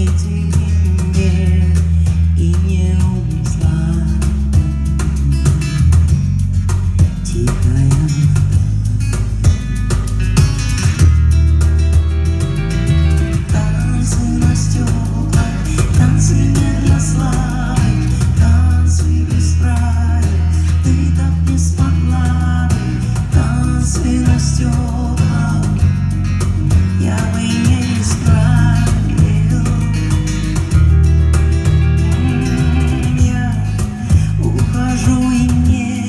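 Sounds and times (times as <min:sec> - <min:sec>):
live pop rock band: 0:00.0 - 0:36.0
wavering lead melody: 0:11.0 - 0:14.2, 0:30.2 - 0:34.1.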